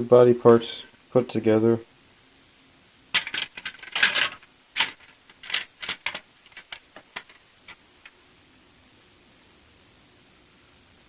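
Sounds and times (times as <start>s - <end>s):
plastic parts clicking together: 3.2s - 8.2s.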